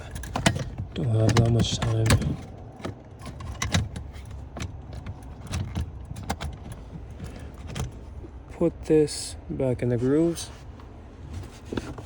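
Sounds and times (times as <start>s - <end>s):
tools and plastic trim clicking: 0.0s - 8.0s.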